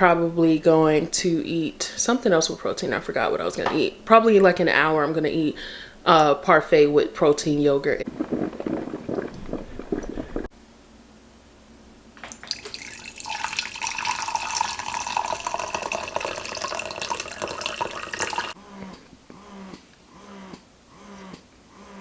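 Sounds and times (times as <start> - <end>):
tap water running into sink: 12.2 - 18.6.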